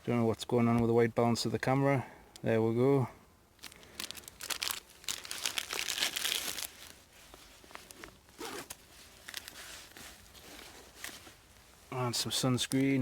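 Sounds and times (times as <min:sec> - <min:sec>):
gear crinkling and rustling: 0:03.6 - 0:13.0.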